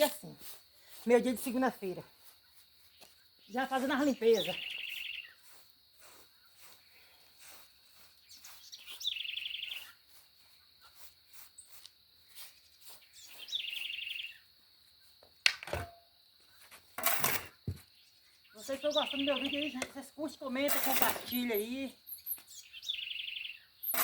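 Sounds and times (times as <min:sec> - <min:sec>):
bird trilling: 0:04.2 - 0:05.4.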